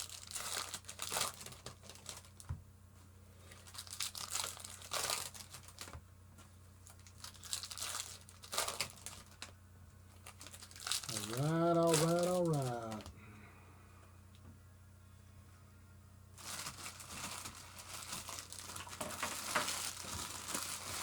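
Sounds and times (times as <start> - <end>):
foil wrappers crinkling and tearing: 0.0 - 2.5, 3.4 - 6.0, 6.8 - 13.1, 16.4 - 21.0
low steady hum: 0.0 - 21.0.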